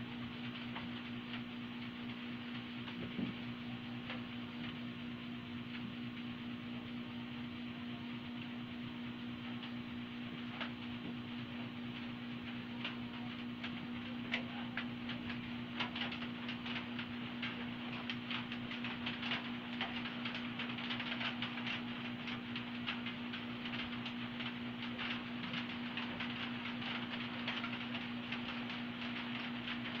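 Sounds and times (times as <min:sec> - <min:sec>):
steady low hum: 0:00.0 - 0:30.0
needle and fabric clicks and rustles: 0:09.6 - 0:30.0.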